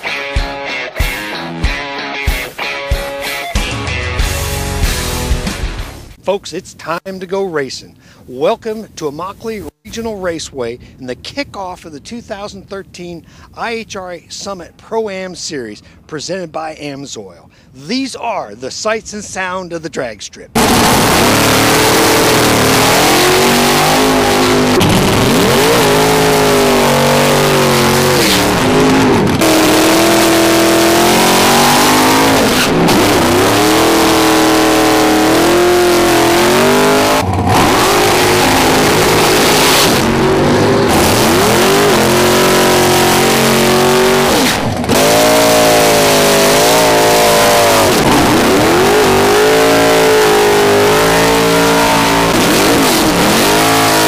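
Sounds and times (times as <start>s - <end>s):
drag racing engines revving: 20.6s - 54.0s.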